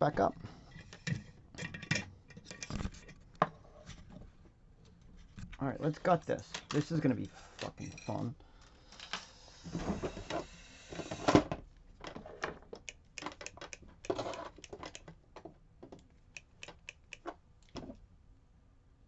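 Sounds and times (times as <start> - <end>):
lock and tools clicking: 12.8 - 15.2, 16.0 - 17.8.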